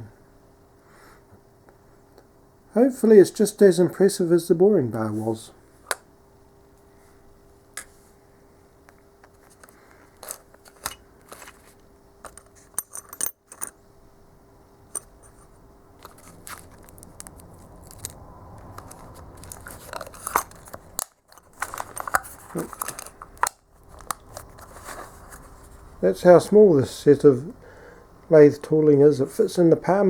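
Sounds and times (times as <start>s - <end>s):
rustling: 23.8s - 26.0s.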